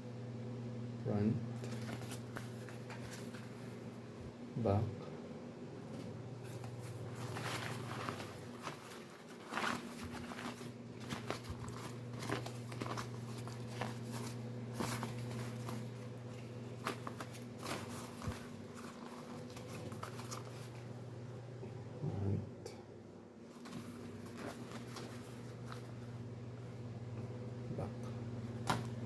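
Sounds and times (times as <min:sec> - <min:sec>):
steady low hum: 0:00.0 - 0:29.0
plastic armbands crinkling: 0:06.4 - 0:20.9.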